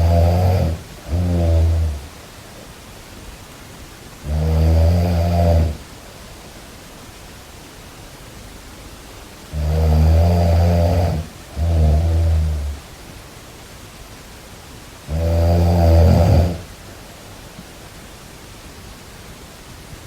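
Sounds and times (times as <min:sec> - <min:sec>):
loud snoring: 0:00.0 - 0:02.2, 0:04.2 - 0:05.8, 0:09.5 - 0:12.9, 0:15.1 - 0:16.7.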